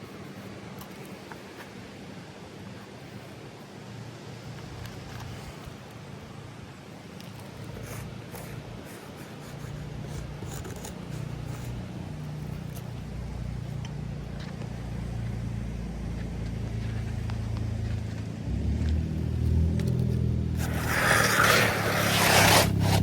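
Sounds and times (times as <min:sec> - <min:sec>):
light scraping and clicking: 0:00.0 - 0:01.8, 0:04.5 - 0:06.0, 0:07.2 - 0:14.8, 0:16.1 - 0:23.0
vehicle engine rumble: 0:09.5 - 0:23.0.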